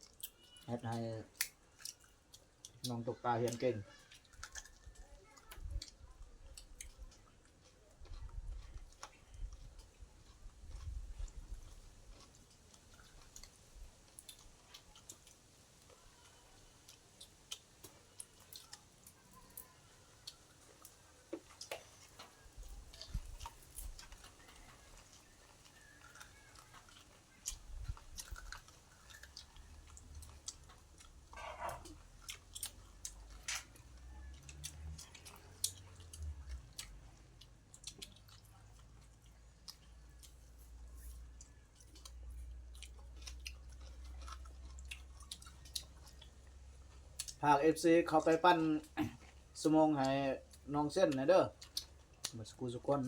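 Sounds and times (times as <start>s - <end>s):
wet mouth clicks and smacks: 0.0s - 3.6s, 31.8s - 40.5s
person chewing food: 0.0s - 47.4s, 48.0s - 53.0s.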